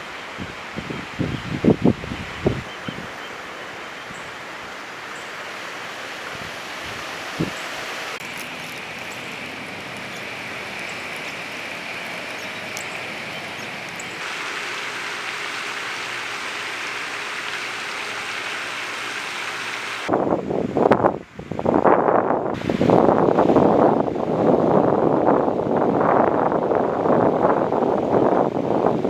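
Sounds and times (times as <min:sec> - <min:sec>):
wind buffeting microphone: 0:00.0 - 0:03.2, 0:06.2 - 0:14.4, 0:19.9 - 0:29.0.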